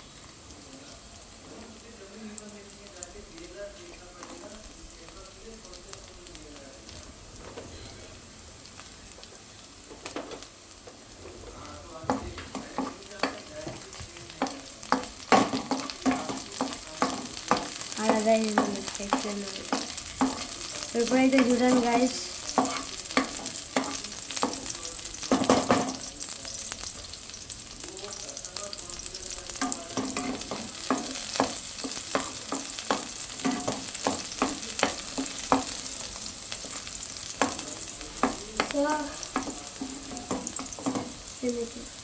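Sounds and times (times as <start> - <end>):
vegetables sizzling in oil: 0.0 - 42.0
spatula knocking against pan: 12.1 - 13.8, 14.4 - 20.6, 22.5 - 26.1, 29.6 - 35.8, 37.4 - 41.2.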